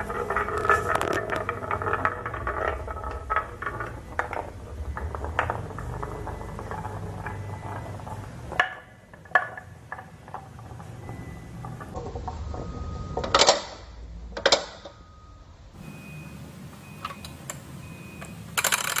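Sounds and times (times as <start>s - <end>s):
marbles rolling on a track: 0.0s - 13.6s, 18.6s - 19.0s.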